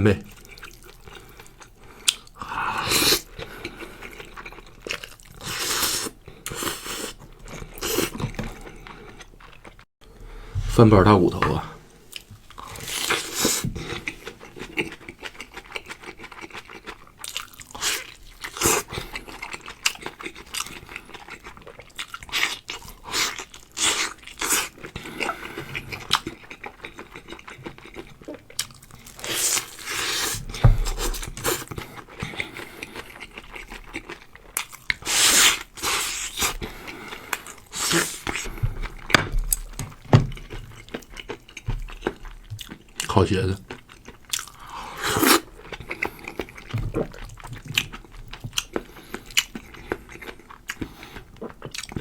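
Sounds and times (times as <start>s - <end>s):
person chewing crunchy food: 0.3s - 9.9s, 11.4s - 52.0s.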